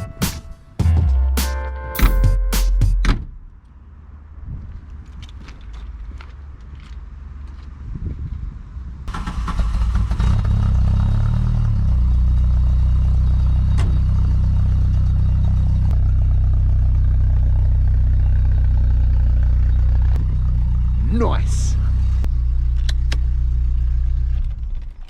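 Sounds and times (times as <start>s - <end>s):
car engine running: 11.7s - 25.0s.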